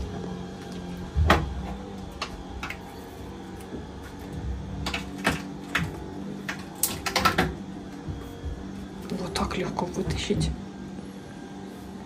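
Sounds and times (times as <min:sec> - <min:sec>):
tools clicking and knocking: 0:04.8 - 0:07.6.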